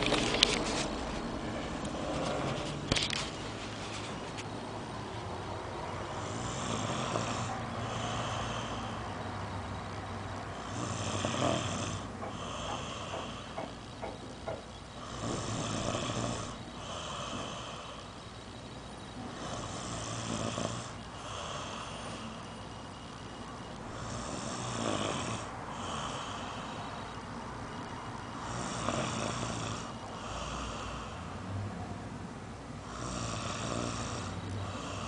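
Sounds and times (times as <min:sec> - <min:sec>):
snoring: 0:06.0 - 0:09.1, 0:10.5 - 0:14.3, 0:15.0 - 0:18.4, 0:19.3 - 0:22.6, 0:23.8 - 0:27.2, 0:28.4 - 0:31.6, 0:32.8 - 0:35.0.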